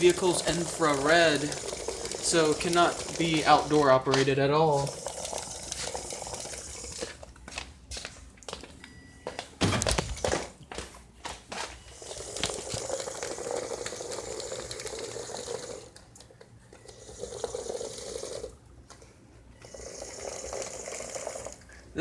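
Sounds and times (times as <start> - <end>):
electric gear motors humming: 0.0 - 7.5, 11.9 - 22.0.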